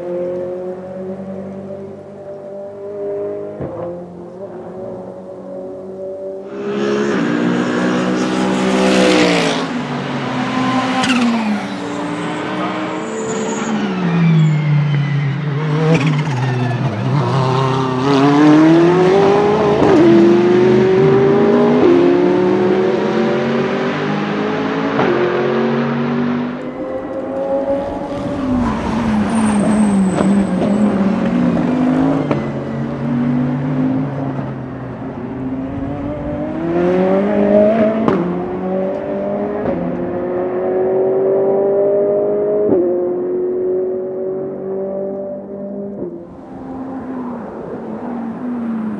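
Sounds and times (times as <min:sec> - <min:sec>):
race car engine accelerating: 0:00.0 - 0:48.9.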